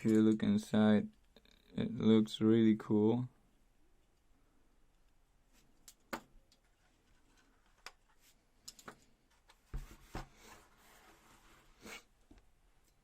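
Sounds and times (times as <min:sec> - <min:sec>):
soft rustle: 0:06.6 - 0:12.1.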